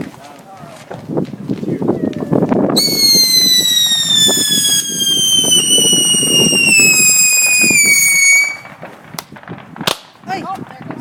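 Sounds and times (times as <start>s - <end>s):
whistling firework: 2.7s - 9.8s.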